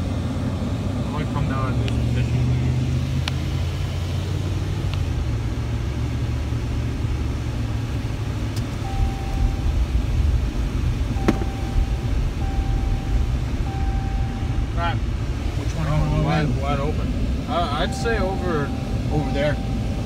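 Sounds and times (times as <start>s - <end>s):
car driving low rumble: 0.0s - 20.0s
high beep: 8.8s - 9.7s, 11.2s - 14.7s, 17.6s - 20.0s.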